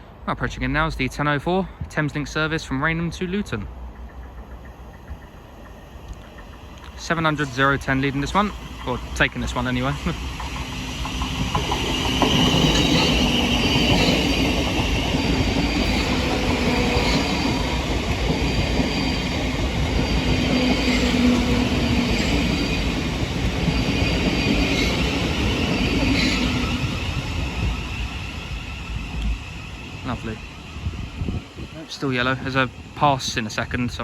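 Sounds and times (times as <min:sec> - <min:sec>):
train rumbling: 0:00.0 - 0:34.0
wheels and brakes squealing: 0:09.9 - 0:33.0.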